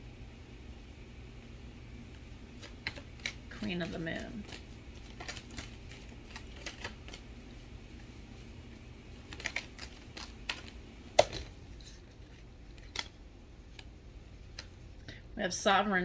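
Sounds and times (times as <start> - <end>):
cards shuffling and rustling: 2.1 - 14.8.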